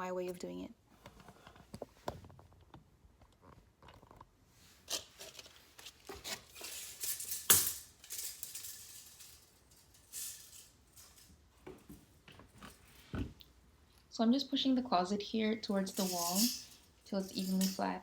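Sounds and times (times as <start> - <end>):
objects clicking and rattling: 4.9 - 13.1, 15.7 - 18.0.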